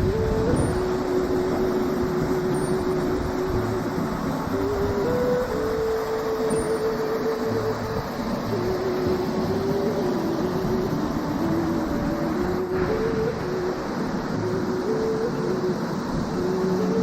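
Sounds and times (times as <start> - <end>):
waterfall roaring: 0.0 - 17.0.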